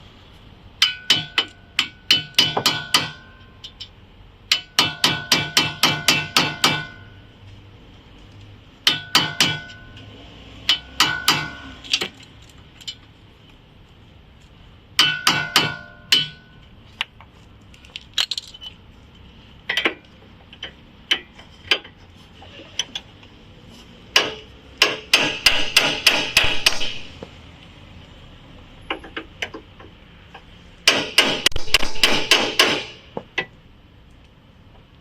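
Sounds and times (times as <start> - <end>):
hammer striking metal: 0.8 - 3.8, 4.5 - 7.2, 8.8 - 10.1, 10.7 - 11.8, 15.0 - 16.6, 24.1 - 27.2, 30.8 - 33.2.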